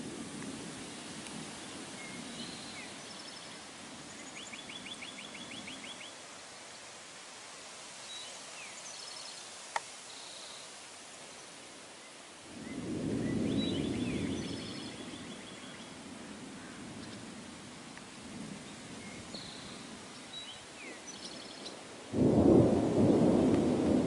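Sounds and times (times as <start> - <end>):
steady background hiss: 0.0 - 24.0
birds chirping: 10.1 - 17.3.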